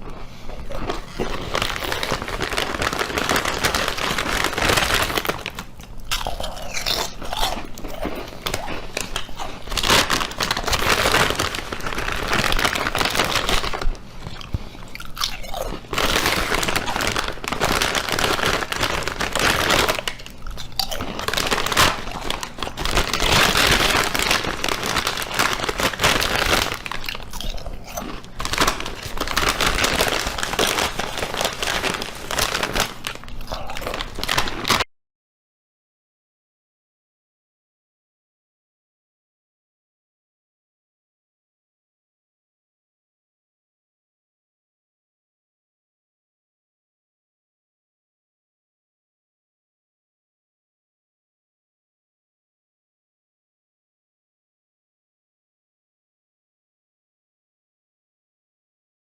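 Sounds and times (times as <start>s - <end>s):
loud crunching and crackling: 0.7s - 34.9s.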